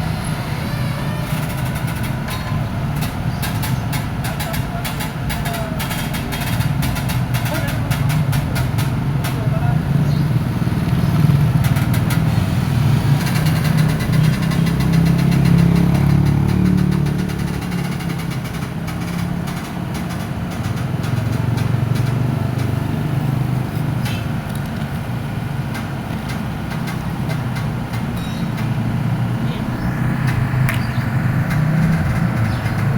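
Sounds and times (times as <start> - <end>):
excavator diesel engine droning: 0.0 - 6.4, 26.6 - 32.9.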